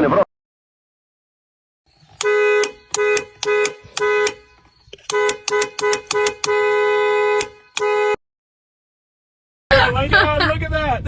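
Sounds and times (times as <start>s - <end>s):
vehicle horn honking: 2.2s - 8.2s.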